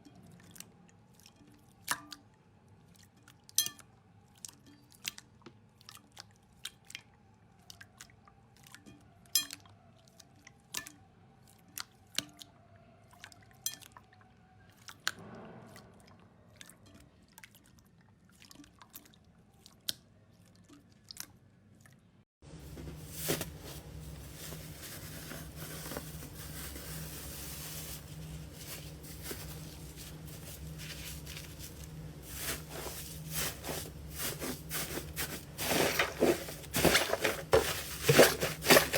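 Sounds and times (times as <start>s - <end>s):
steady low hum: 22.5s - 38.9s.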